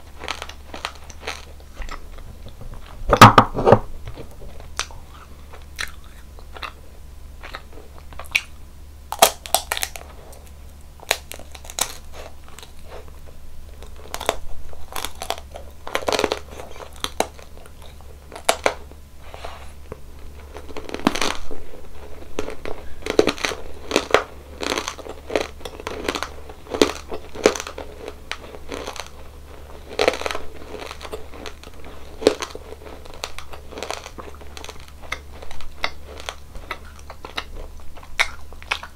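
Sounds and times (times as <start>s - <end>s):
chewing and crunching: 0.0s - 3.3s, 4.0s - 38.9s
faint low hum: 0.0s - 38.9s
wet mouth sounds: 4.7s - 6.8s, 30.1s - 38.9s.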